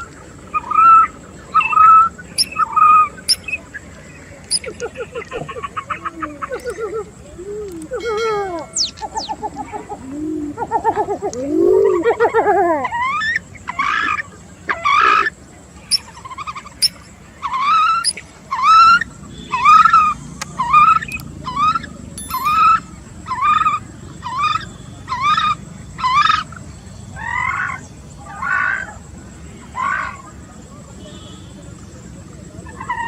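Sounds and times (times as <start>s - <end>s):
coot calling: 15.9s - 23.8s.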